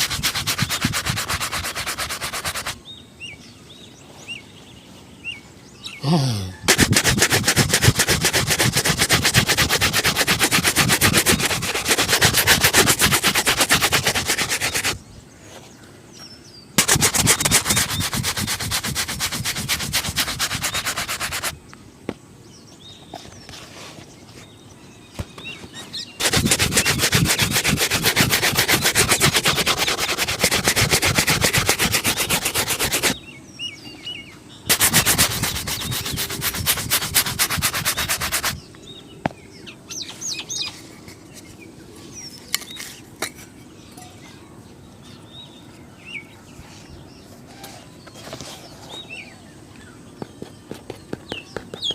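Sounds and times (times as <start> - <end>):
shoe brush buffing a shoe: 0.0 - 2.8, 6.0 - 15.0, 16.8 - 21.6, 26.2 - 33.2, 34.7 - 38.6
birds chirping: 0.0 - 51.9.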